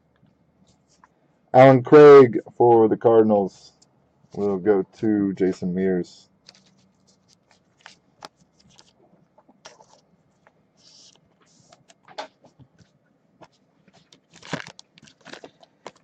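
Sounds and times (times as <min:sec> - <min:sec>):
plastic sleeves rustling: 0:06.4 - 0:16.0.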